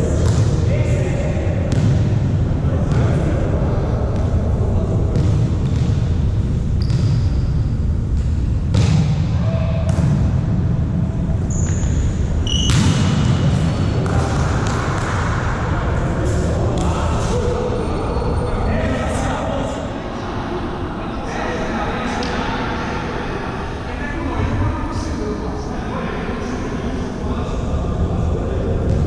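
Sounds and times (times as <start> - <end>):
echoing hall background din: 0.0 - 29.0
sports shoes squeaking: 6.8 - 7.6, 11.4 - 13.0.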